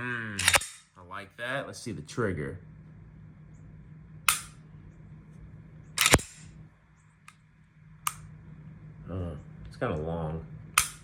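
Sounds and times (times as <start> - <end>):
pistol action metallic clicks: 0.4 - 0.9, 6.0 - 6.5, 10.8 - 11.0.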